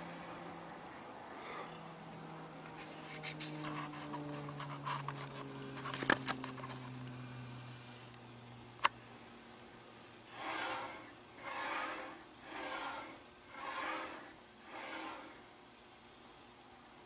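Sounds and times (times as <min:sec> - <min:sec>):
sharpening machine carriage rubbing: 0:10.3 - 0:15.4.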